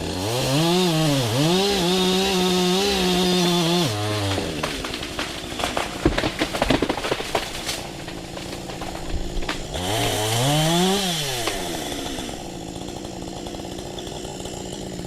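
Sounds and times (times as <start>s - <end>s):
chainsaw engine idling and revving: 0.0s - 15.0s
sharp cracks and knocks: 2.8s - 12.7s.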